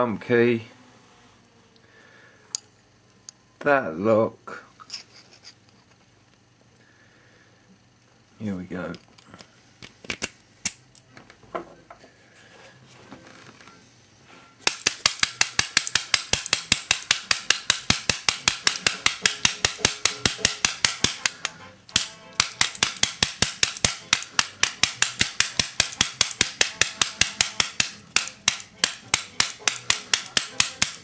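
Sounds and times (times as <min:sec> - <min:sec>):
fast sharp metallic taps: 0:14.7 - 0:31.0.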